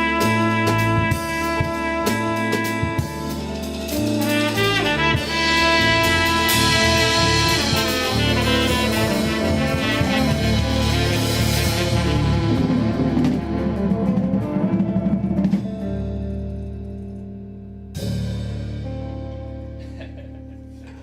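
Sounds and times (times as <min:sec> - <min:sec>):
held horn-like notes: 0:00.0 - 0:15.8
drums keeping time: 0:00.0 - 0:17.2
bass line: 0:00.0 - 0:21.0.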